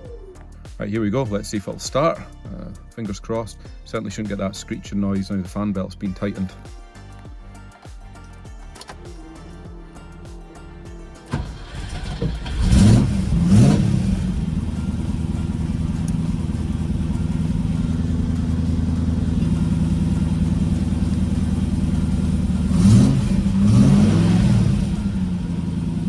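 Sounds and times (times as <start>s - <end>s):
car engine idling: 8.1s - 26.0s
car engine starting and revving: 8.8s - 26.0s.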